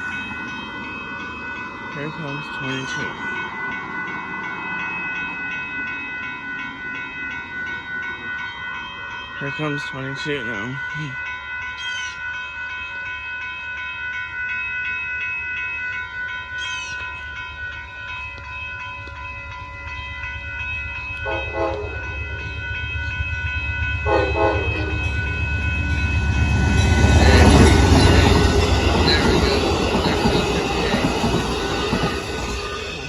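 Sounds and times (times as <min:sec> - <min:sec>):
train passing rumble: 0:00.0 - 0:33.0
train horn sounding chords: 0:21.2 - 0:22.4, 0:24.0 - 0:25.4.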